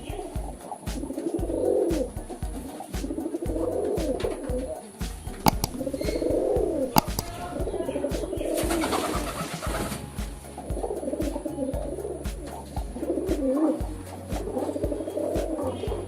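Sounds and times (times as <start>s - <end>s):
pigeon cooing: 0.0s - 10.0s
sharp clicks: 5.1s - 8.6s.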